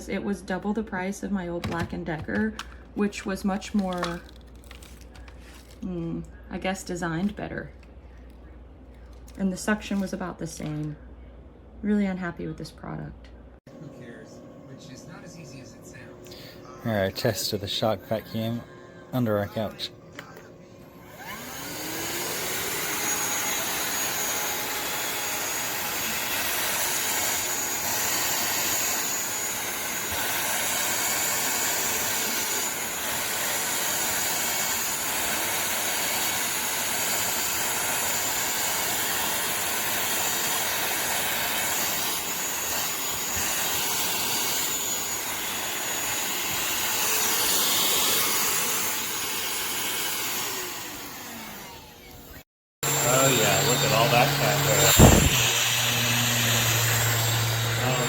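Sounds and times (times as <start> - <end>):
vacuum cleaner motor: 1.6 - 6.2, 16.3 - 58.0.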